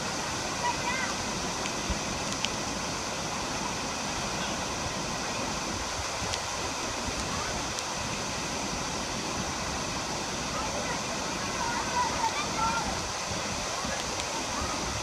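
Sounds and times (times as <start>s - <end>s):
waterfall rushing: 0.0s - 15.0s
faint ticks: 1.6s - 2.6s.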